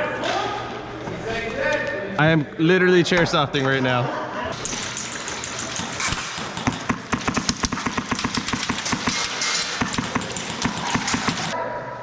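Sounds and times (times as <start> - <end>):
airsoft guns rapid firing: 4.5 - 11.6.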